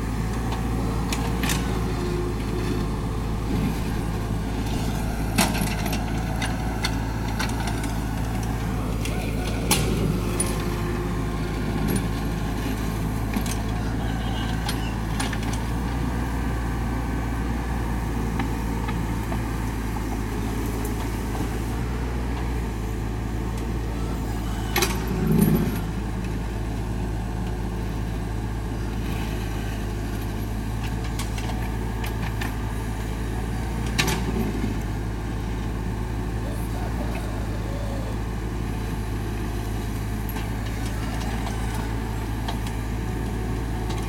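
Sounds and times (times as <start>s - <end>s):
excavator diesel engine running: 0.0s - 44.0s.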